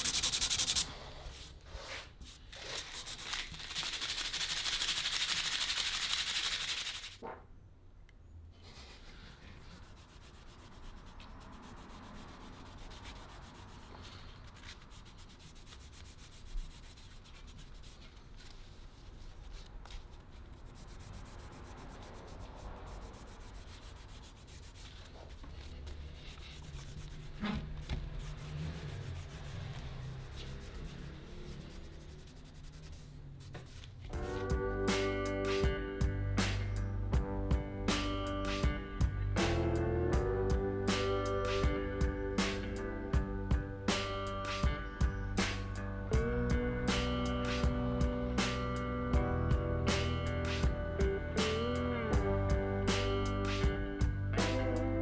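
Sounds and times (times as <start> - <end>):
cloth rubbing wooden handle: 0.0 - 7.2.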